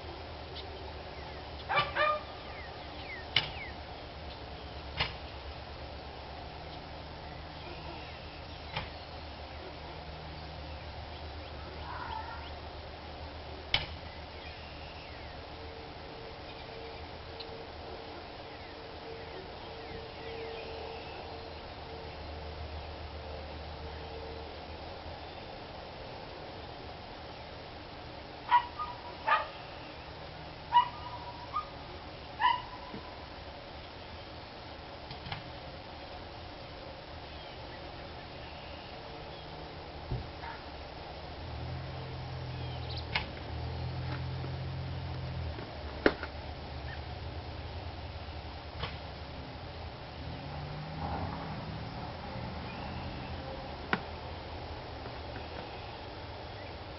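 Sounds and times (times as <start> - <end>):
low background hum: 0.0 - 56.9
dog barking: 1.7 - 2.3, 28.5 - 29.6, 30.7 - 31.8, 32.4 - 32.9.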